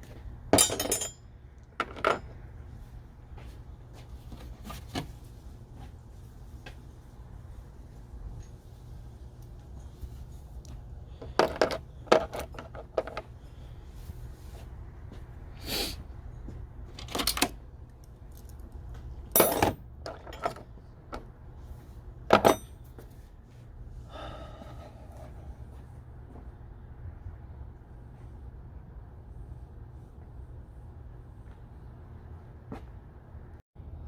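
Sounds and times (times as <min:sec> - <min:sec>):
metal tools clinking: 0:00.6 - 0:01.2, 0:19.4 - 0:20.6, 0:22.3 - 0:22.9.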